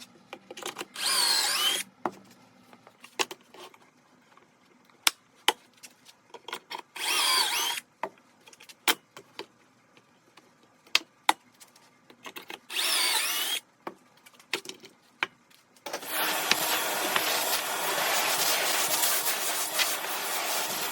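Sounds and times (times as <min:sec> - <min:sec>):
power drill running: 0:01.0 - 0:01.8, 0:07.0 - 0:07.8, 0:12.7 - 0:13.6, 0:15.9 - 0:20.9.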